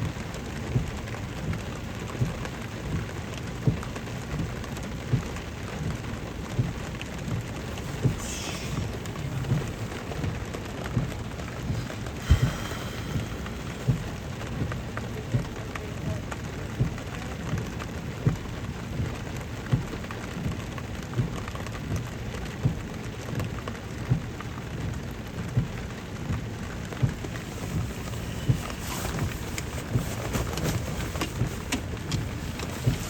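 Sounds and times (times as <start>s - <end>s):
steady rain: 0.0s - 33.0s
short low thump: 11.7s - 14.2s.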